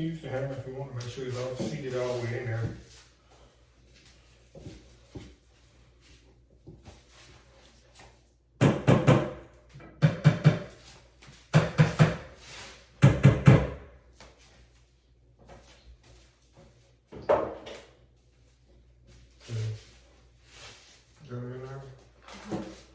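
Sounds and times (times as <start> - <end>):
hammer tapping furniture panel: 8.6 - 9.4, 10.0 - 10.8, 11.5 - 12.3, 13.0 - 13.8.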